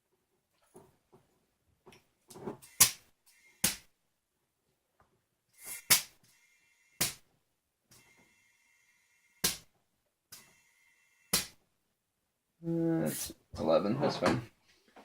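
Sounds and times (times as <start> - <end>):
air chuck bursts of air: 5.5 - 7.2.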